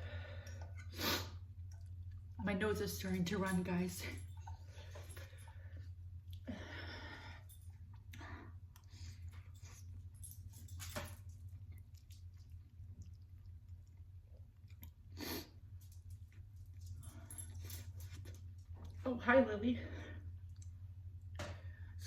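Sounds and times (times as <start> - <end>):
steady low hum: 0.0 - 22.0
chewing and wet mouth sounds: 0.4 - 2.4, 4.2 - 6.5, 7.6 - 10.2, 11.4 - 19.0, 20.4 - 21.4.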